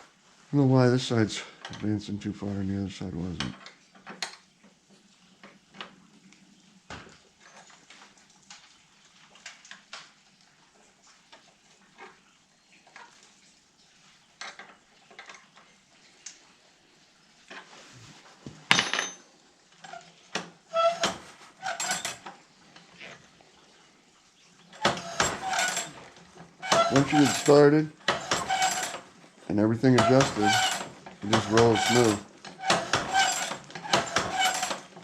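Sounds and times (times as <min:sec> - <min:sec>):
metallic clinking and clattering: 0:18.6 - 0:19.3.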